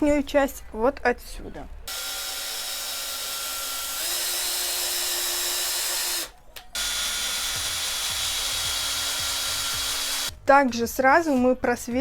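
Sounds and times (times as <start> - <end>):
electric drill on wood: 1.9 - 10.3.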